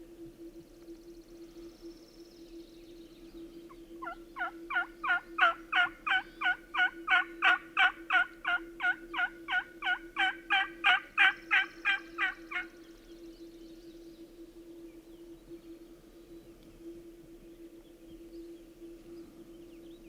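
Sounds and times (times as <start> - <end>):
faint steady hum: 0.0 - 20.0
turkey yelping: 4.0 - 12.7.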